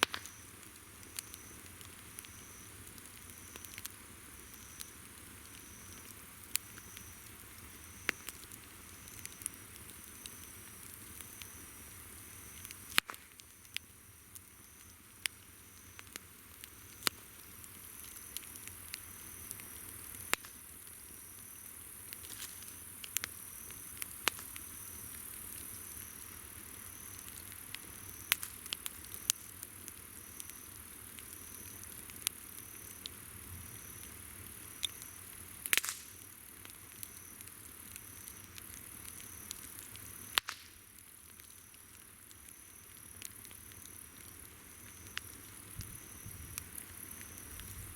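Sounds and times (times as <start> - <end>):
campfire crackling and popping: 0.0 - 47.9
insects chirring: 0.0 - 47.9.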